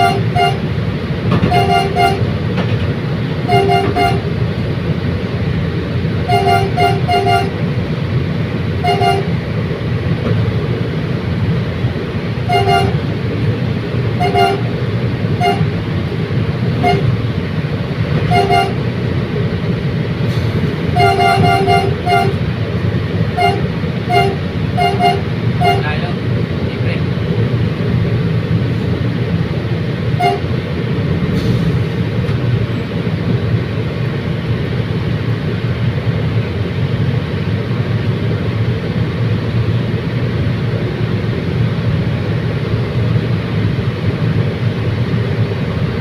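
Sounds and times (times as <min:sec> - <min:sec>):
train horn short toots: 0:00.0 - 0:00.6, 0:01.4 - 0:02.3, 0:03.5 - 0:04.3, 0:06.3 - 0:07.6, 0:08.8 - 0:09.3, 0:12.5 - 0:13.0, 0:14.2 - 0:14.7, 0:15.4 - 0:15.7, 0:16.8 - 0:17.1, 0:18.3 - 0:18.8, 0:20.9 - 0:22.4, 0:23.4 - 0:26.0, 0:30.2 - 0:30.5
train running low rumble: 0:00.0 - 0:46.0.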